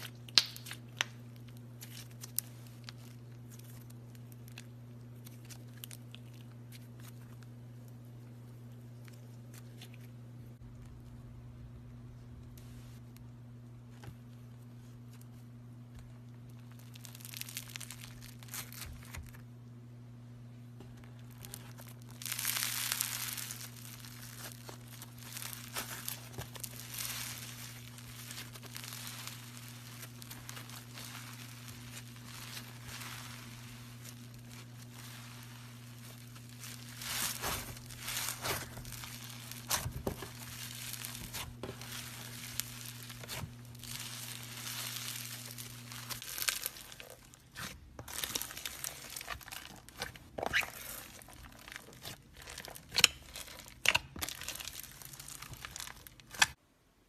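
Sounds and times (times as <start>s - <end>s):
steady low hum: 0.0s - 50.4s
slime crackling: 16.4s - 19.3s, 21.3s - 56.6s.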